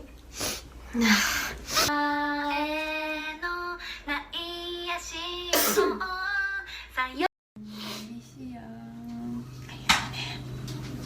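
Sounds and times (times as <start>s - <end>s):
person sneezing: 5.6s - 6.0s.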